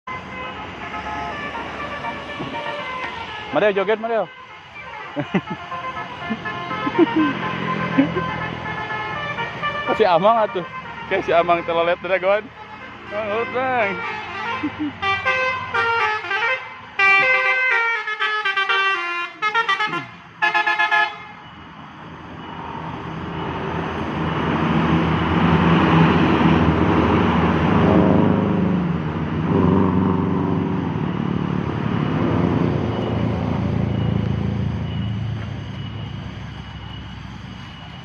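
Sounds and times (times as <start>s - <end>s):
bus passing: 0.0s - 38.0s
bus horn playing a tune: 0.1s - 3.4s, 4.2s - 21.4s.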